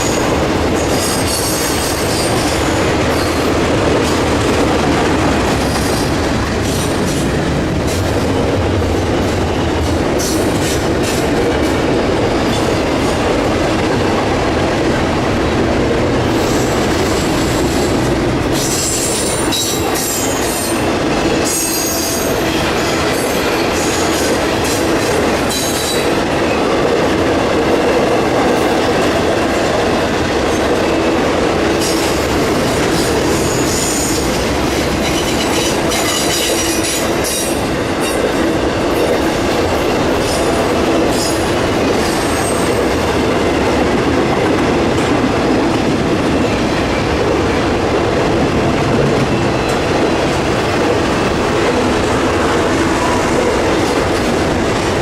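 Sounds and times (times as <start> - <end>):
freight train rolling past: 0.0 - 55.0
train wheels squealing: 21.4 - 22.5.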